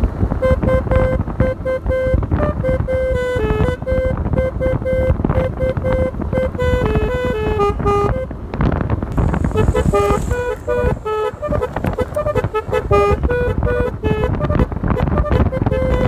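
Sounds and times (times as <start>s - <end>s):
electric air horn melody: 0.4s - 8.4s, 9.1s - 16.0s
low rumble: 9.1s - 14.0s.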